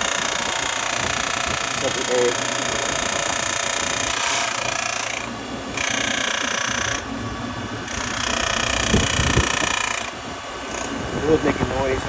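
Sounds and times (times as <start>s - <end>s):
cooling fan motor whining: 0.0s - 12.0s
high-pitched fan noise: 0.0s - 12.0s.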